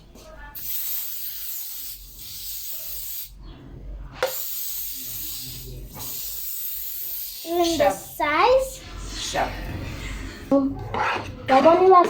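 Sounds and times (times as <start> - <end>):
aerosol spray hissing: 0.6 - 3.4, 4.2 - 8.2.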